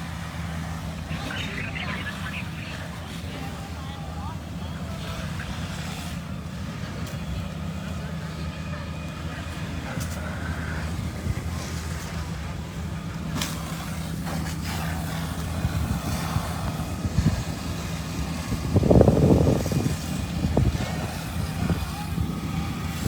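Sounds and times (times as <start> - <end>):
diesel engine running: 0.0 - 23.0
rush of noise: 0.3 - 3.7.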